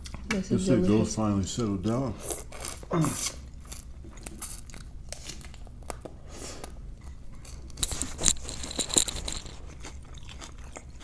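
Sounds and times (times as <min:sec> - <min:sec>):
chewing and crunching food: 0:02.2 - 0:11.0.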